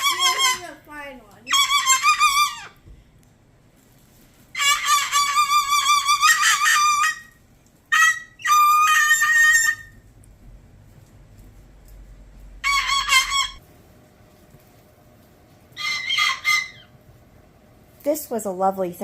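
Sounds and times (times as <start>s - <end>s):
cockatoo wavering call: 1.5s - 2.8s, 4.6s - 10.0s, 12.6s - 13.6s, 15.8s - 16.9s.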